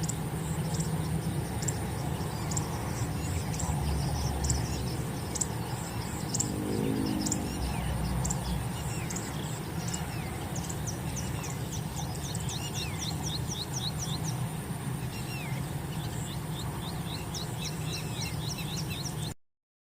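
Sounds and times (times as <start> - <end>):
low curling bird notes: 0.0 - 14.4
steady low rumble: 0.0 - 18.7
birds chirping: 0.0 - 19.4.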